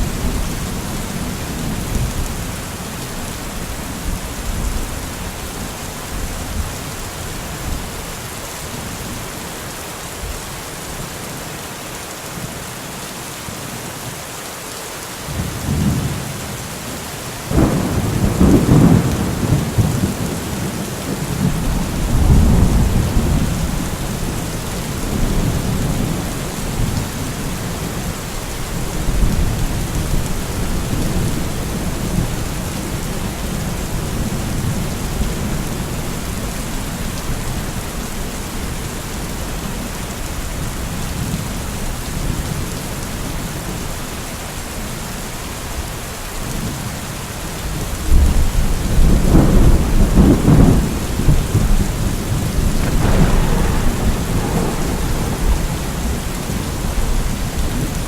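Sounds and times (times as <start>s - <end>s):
heavy rain: 0.0s - 58.0s
thunder rumbling and cracking: 17.5s - 36.4s, 48.1s - 58.0s.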